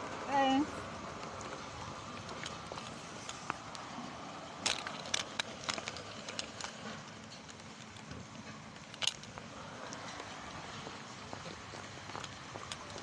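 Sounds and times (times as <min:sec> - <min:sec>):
sharp clicks and knocks: 0:04.6 - 0:10.2.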